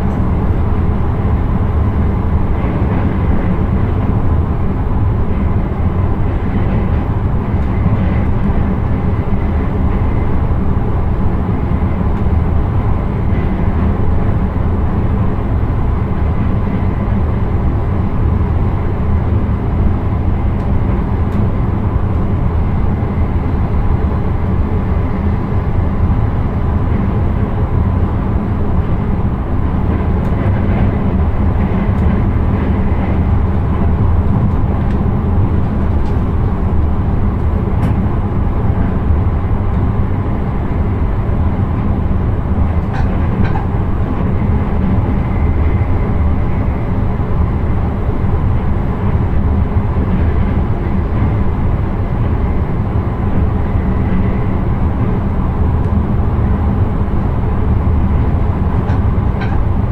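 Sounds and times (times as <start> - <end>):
train low rumble: 0.0 - 59.9
faint train clicks: 28.3 - 59.9.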